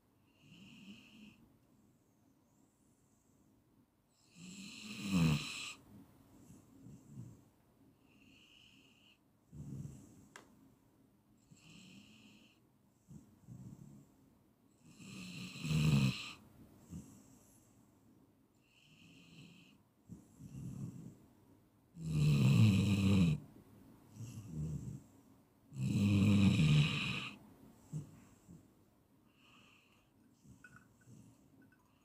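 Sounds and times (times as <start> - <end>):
dog snoring: 0.3 - 1.4, 4.2 - 5.8, 8.0 - 10.3, 11.4 - 14.1, 14.8 - 17.5, 18.6 - 21.2, 22.0 - 23.4, 24.1 - 25.1, 25.7 - 28.6, 29.3 - 31.3.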